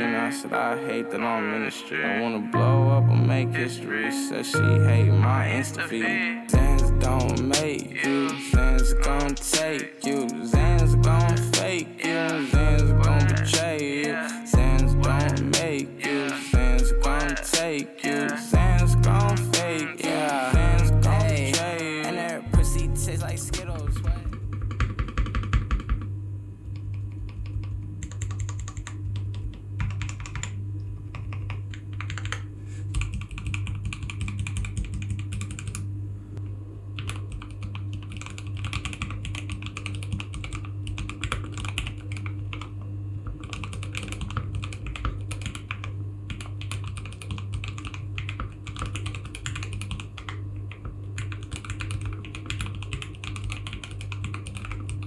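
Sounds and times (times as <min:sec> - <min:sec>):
steady low hum: 0:06.6 - 0:08.0, 0:08.6 - 0:09.8, 0:10.4 - 0:17.8, 0:18.6 - 0:24.8
mechanical keyboard typing: 0:06.8 - 0:22.5, 0:26.9 - 0:32.4, 0:37.1 - 0:42.7, 0:43.4 - 0:50.4.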